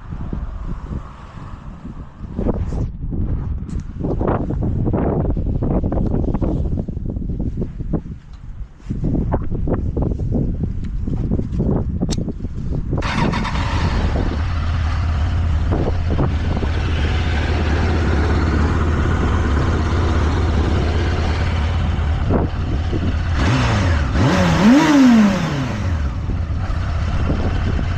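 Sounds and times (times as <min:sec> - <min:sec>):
motorcycle engine running and revving: 0:10.8 - 0:27.9.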